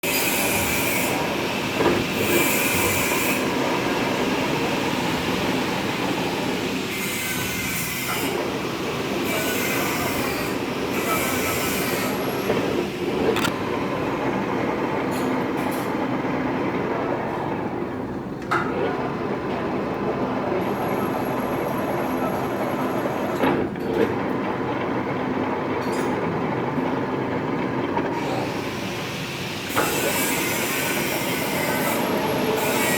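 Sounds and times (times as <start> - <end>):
metal-turning lathe running: 0.0 - 32.9
sharp clicks: 13.4 - 13.6.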